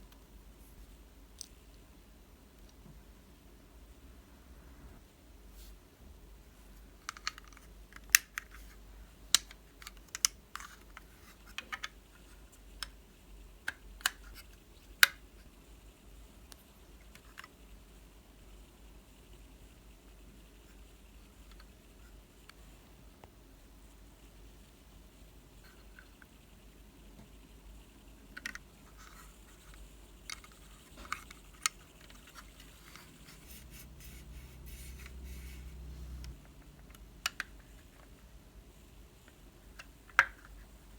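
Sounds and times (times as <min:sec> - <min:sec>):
light scratching of packaging: 0:28.8 - 0:35.8.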